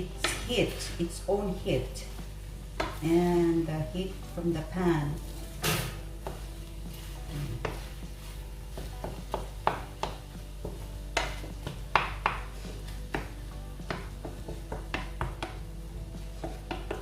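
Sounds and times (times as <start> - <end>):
spatula knocking on pan: 2.7 - 3.0, 8.7 - 15.6, 16.2 - 17.0.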